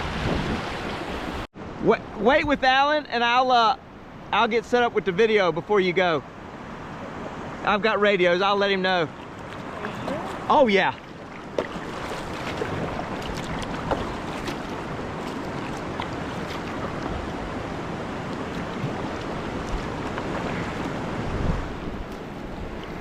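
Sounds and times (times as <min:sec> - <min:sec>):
wind buffeting microphone: 0:00.0 - 0:01.4, 0:09.2 - 0:23.0
river whitewater rushing: 0:06.3 - 0:23.0.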